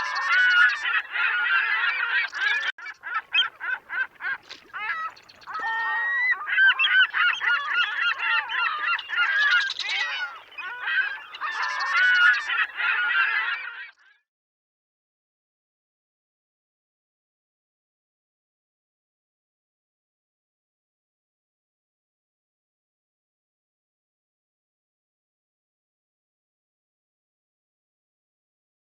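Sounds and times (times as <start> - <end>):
waterfowl honking: 0.0 - 13.8.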